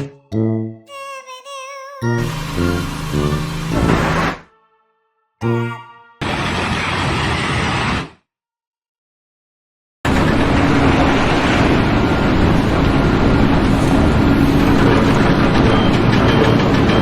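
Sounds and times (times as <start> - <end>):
loud engine noise: 2.2 - 4.4, 6.2 - 8.0, 10.1 - 17.0.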